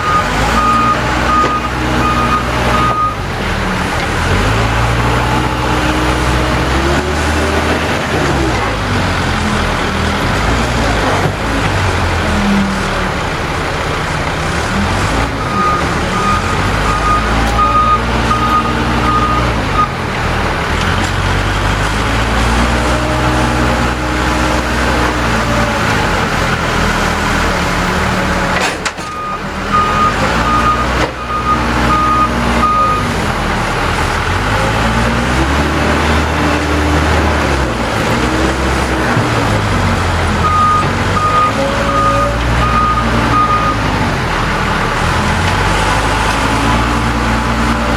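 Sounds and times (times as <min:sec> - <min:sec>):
reverse alarm beeping: 0:00.0 - 0:03.2, 0:29.1 - 0:33.0, 0:40.4 - 0:43.8
diesel engine revving: 0:00.0 - 0:47.9.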